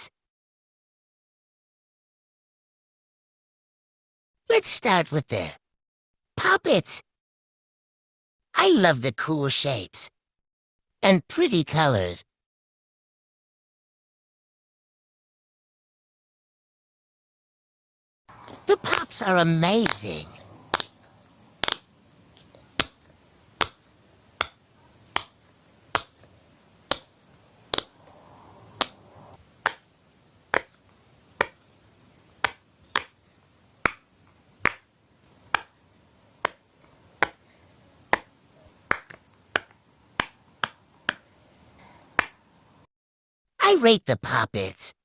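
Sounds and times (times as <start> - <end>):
pop-it fidget toy bubbles popping: 20.7 - 21.0, 21.6 - 21.9, 27.7 - 27.9.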